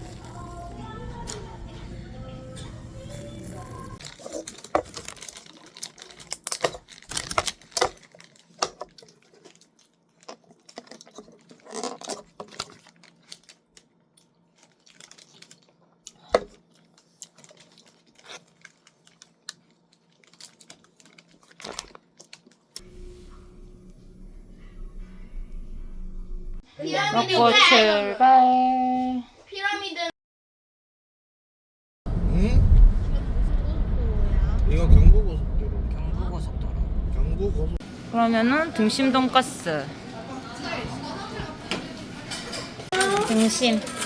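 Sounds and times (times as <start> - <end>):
crinkling tearing rustles: 3.5 - 22.8.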